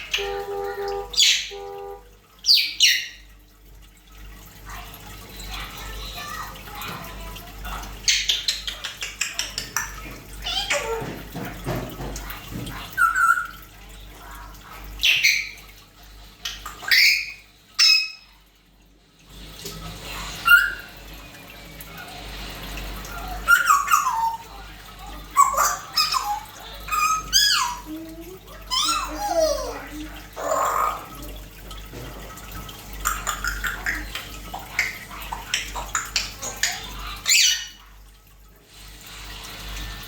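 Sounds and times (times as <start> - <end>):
parrot whistles and chirps: 13.0 - 13.6, 16.8 - 18.3, 20.4 - 20.9, 37.2 - 37.8.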